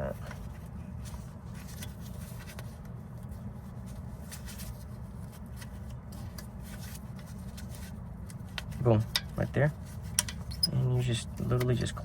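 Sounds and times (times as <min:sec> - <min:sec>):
clicks and rubbing of wire: 0:05.6 - 0:12.0.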